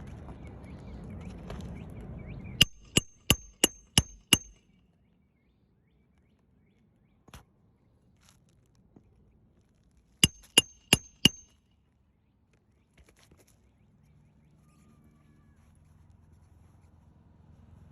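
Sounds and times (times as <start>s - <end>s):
hammer striking roofing nail: 2.6s - 4.6s, 10.2s - 11.5s.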